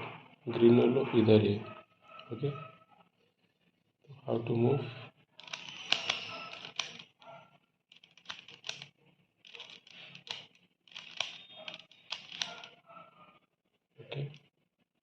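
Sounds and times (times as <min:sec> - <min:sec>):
plastic puzzle clicking and rattling: 0:05.4 - 0:12.8.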